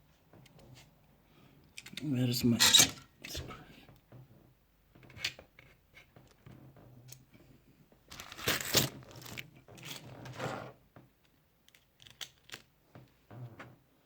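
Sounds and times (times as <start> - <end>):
packaging crinkling and rustling: 8.1 - 10.7.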